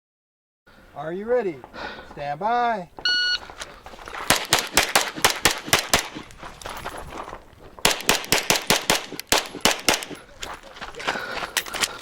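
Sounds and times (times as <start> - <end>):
pistol shots in rapid strings: 4.3 - 6.2, 7.8 - 10.2.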